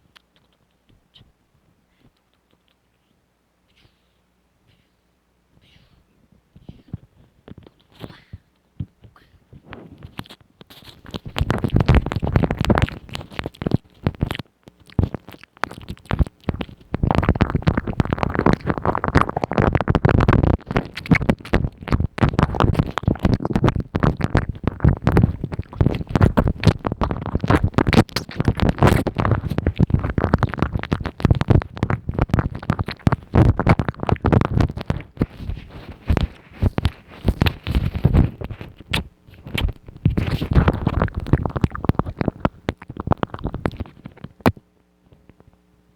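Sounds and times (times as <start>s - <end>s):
wet mouth clicks and smacks: 10.1s - 44.6s.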